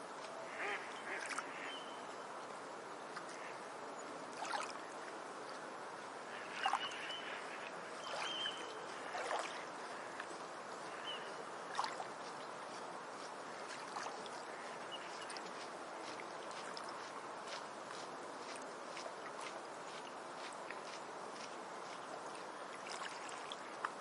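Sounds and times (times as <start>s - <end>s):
steady rush of water: 0.0s - 24.0s
water sloshing and splashing: 0.7s - 1.6s, 4.2s - 24.0s
high bird calls: 6.3s - 9.0s.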